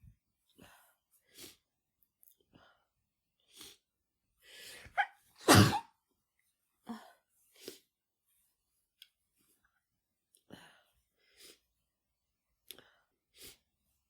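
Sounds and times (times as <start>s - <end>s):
woman sneezing: 5.4s - 5.9s.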